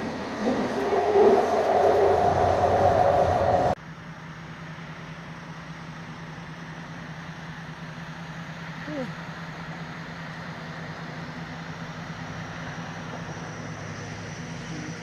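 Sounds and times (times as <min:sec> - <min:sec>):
train running loudly: 0:00.0 - 0:03.8.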